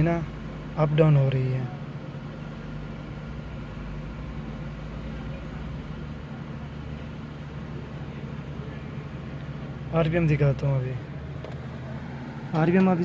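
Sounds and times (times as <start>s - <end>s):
car engine idling: 11.3s - 13.0s.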